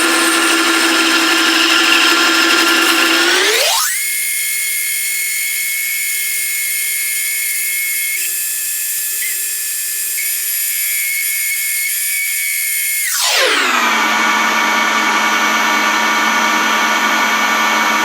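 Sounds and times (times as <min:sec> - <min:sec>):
spindle motor whining: 0:00.0 - 0:18.0.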